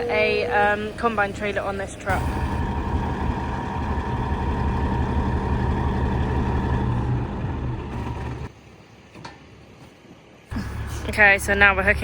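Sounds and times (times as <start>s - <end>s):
diesel engine idling: 0.0s - 8.5s, 10.5s - 12.0s.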